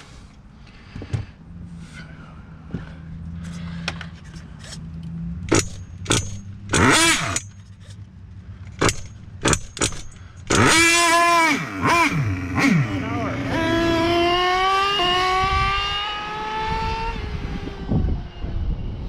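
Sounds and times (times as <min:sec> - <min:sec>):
nitro engine firing and revving: 0:05.1 - 0:07.6, 0:08.8 - 0:19.0
model engine cranking: 0:05.5 - 0:07.6, 0:08.8 - 0:12.2.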